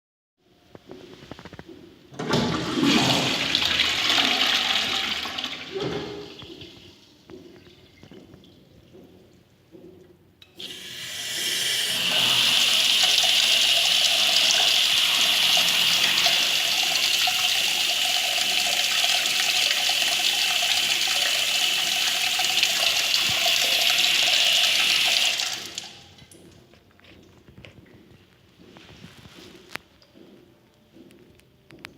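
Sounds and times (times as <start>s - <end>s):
toilet water rushing: 2.2s - 6.4s, 10.6s - 26.2s
toilet flush click: 2.2s - 6.5s, 10.4s - 26.0s.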